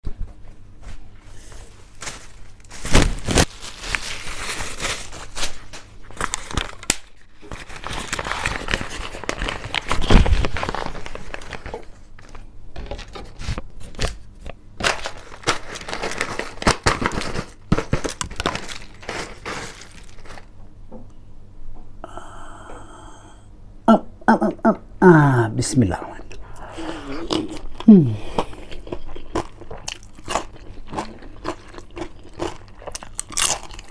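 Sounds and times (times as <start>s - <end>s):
paper wrapping crinkling: 1.6s - 14.2s, 14.8s - 20.5s.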